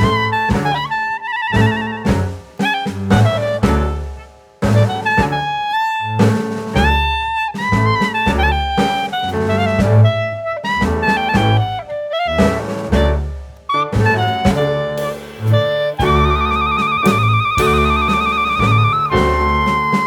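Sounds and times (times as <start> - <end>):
bass and drums: 0.0 - 20.0
jazz tune with saxophone: 0.0 - 20.0.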